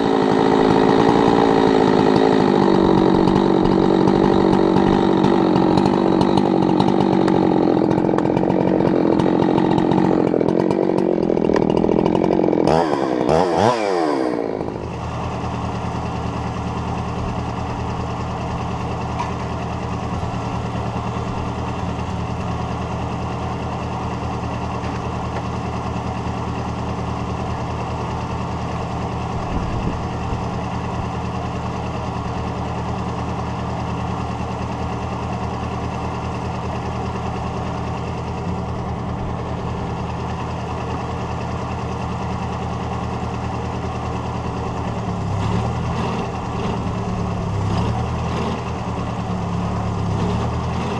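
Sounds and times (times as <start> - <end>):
chainsaw cutting wood: 0.0 - 32.2, 44.4 - 50.9
chainsaw idling: 0.0 - 50.9.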